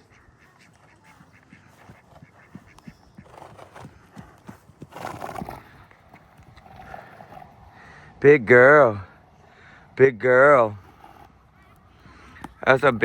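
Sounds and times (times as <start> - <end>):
horse hooves thudding: 0.0 - 7.6.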